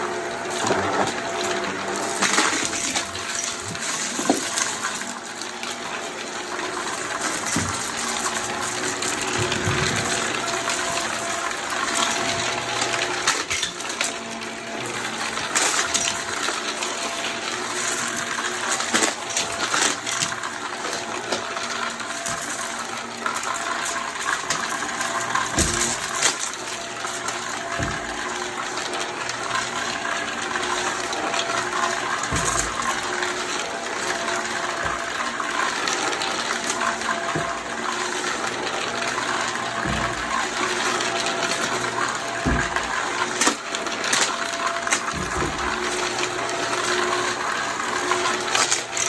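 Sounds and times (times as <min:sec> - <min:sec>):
vacuum cleaner running: 0:00.0 - 0:49.0
debris rattling into vacuum: 0:00.3 - 0:49.0.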